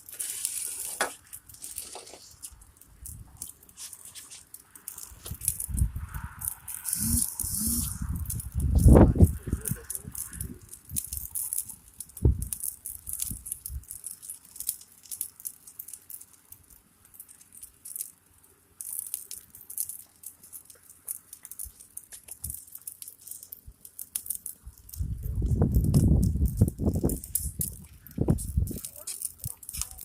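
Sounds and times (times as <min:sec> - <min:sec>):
burning matches crackling: 0:00.0 - 0:30.0.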